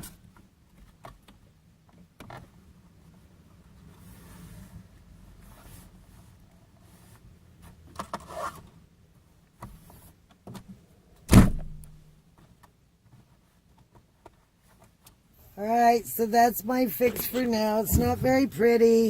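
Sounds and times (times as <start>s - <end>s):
small clicks and handling rustles: 0.2s - 4.1s, 12.3s - 15.3s
loud low ringing thump: 11.3s - 12.1s.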